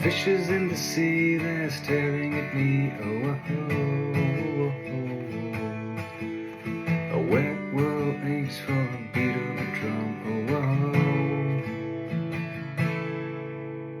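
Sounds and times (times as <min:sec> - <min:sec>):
acoustic guitar strumming: 0:00.0 - 0:14.0.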